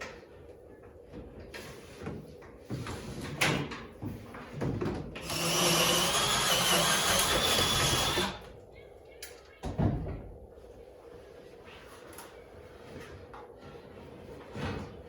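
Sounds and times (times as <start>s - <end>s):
power tool whining: 5.2s - 8.4s.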